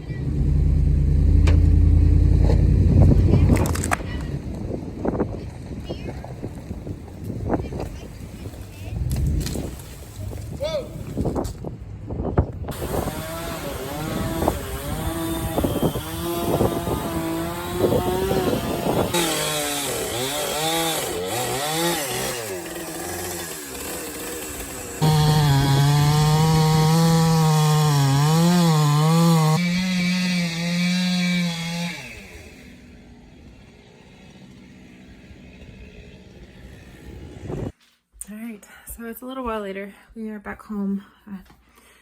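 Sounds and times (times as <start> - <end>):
chainsaw cutting wood: 12.7 - 36.6.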